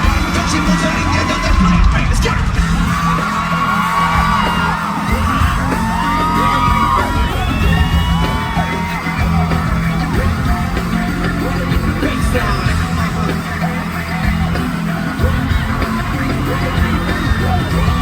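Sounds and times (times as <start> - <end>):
audience screaming and yelling: 0.0 - 18.0
hip-hop track with heavy bass: 0.0 - 18.0.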